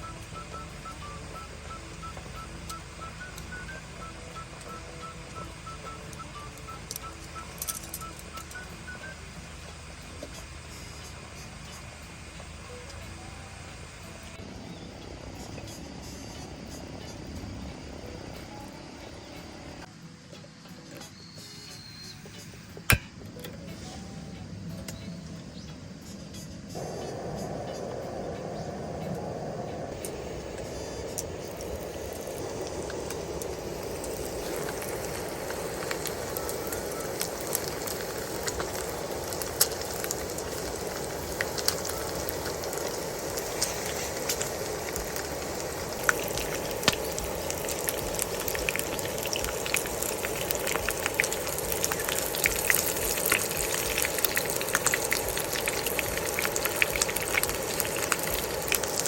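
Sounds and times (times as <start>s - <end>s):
fire crackling and popping: 0.0s - 13.0s, 26.8s - 59.0s.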